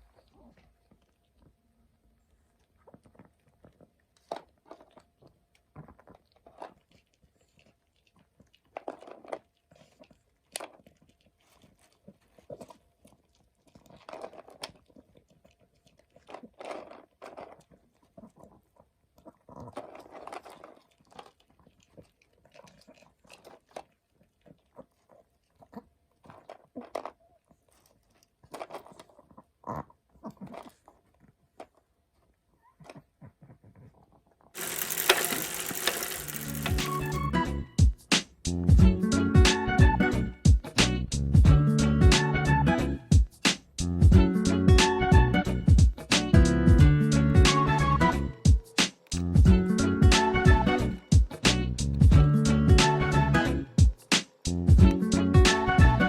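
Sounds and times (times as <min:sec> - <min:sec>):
dog crunching a treat: 0:02.6 - 0:37.3.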